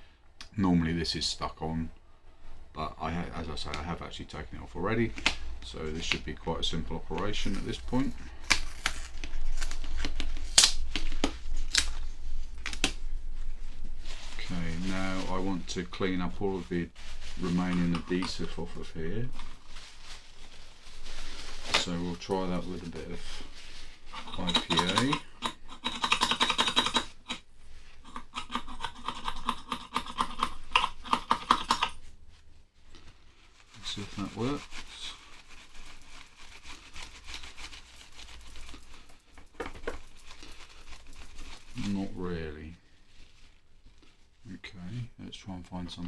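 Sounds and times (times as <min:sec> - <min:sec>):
rhythmic scrubbing on metal: 0:24.0 - 0:32.0
sharp clicks and scrapes: 0:24.1 - 0:32.1.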